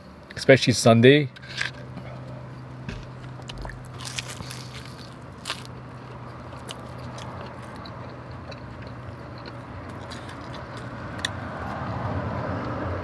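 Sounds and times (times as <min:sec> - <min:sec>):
steady low hum: 0:00.0 - 0:13.0
chewing and biting: 0:03.0 - 0:11.8.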